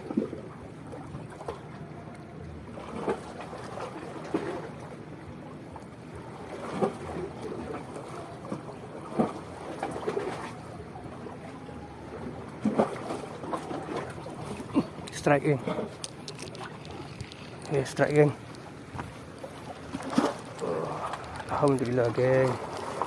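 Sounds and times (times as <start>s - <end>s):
small waves lapping: 0.0s - 23.0s
water splashes: 5.7s - 23.0s.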